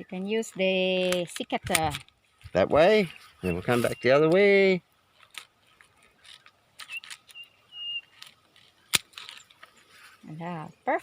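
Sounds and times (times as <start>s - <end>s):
secateurs snipping cactus stem: 1.1s - 2.1s
secateurs clicking: 5.1s - 9.8s.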